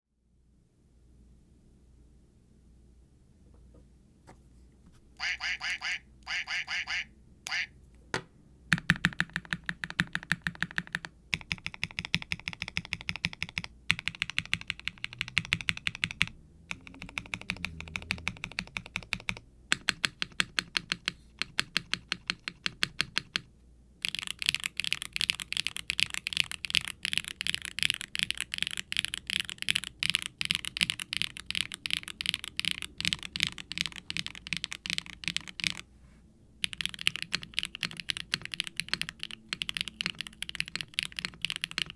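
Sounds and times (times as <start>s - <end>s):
clacky mechanical keyboard typing: 8.7s - 35.8s, 36.6s - 41.9s.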